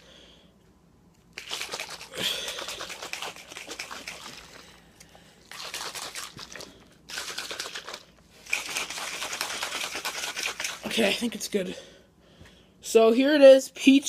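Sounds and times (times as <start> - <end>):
plastic shaker cup rattling: 1.3 - 4.7, 5.4 - 11.4.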